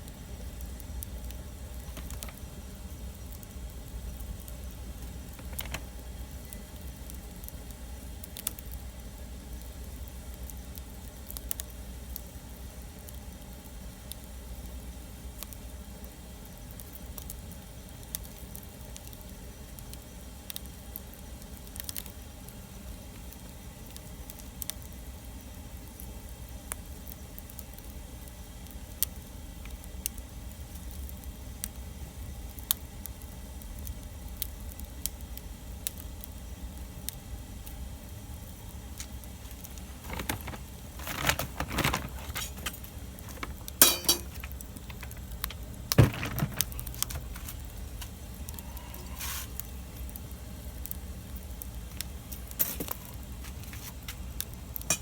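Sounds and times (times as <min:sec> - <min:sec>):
wood fire crackling: 0:00.0 - 0:55.0
cracks and clatter: 0:01.8 - 0:02.6, 0:05.3 - 0:06.0, 0:39.0 - 0:48.6.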